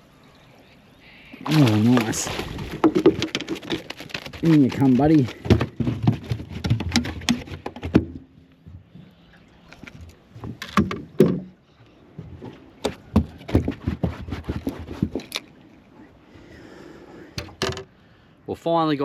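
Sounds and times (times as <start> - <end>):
knocks and clatters in a boat: 1.4 - 15.5, 17.3 - 18.0.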